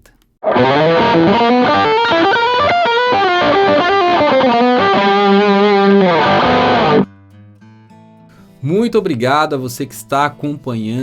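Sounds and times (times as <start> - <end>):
distorted electric guitar riff: 0.4 - 7.1.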